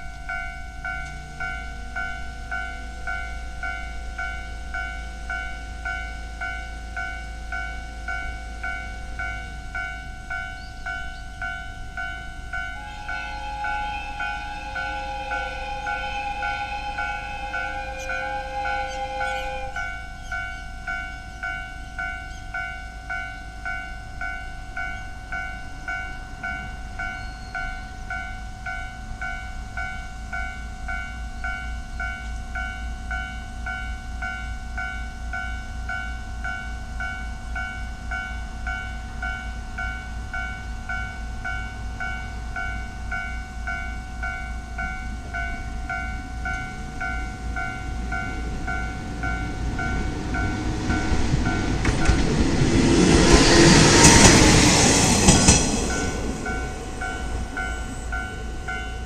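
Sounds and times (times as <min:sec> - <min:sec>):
low rumble: 0:45.8 - 0:59.0.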